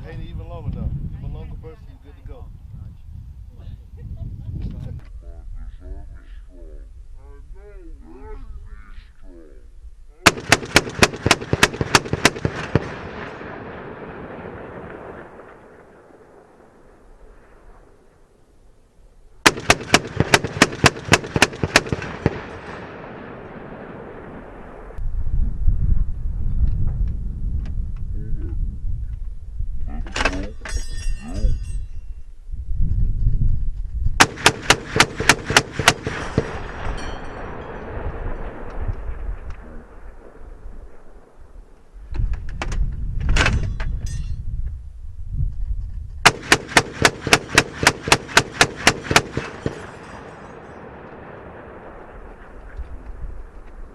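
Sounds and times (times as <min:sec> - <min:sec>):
gunfire echoing: 0:10.2 - 0:18.3, 0:19.4 - 0:25.0, 0:34.2 - 0:41.8, 0:46.2 - 0:53.9
heavy machine gun bursts: 0:10.3 - 0:13.0.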